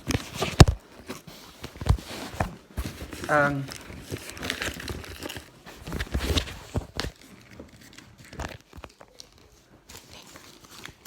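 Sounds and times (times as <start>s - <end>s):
packaging crinkling and rustling: 0.0s - 11.0s.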